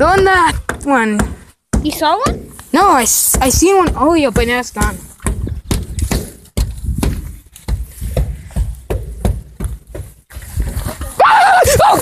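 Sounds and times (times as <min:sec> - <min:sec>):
fists banging on a wall: 0:00.0 - 0:10.3.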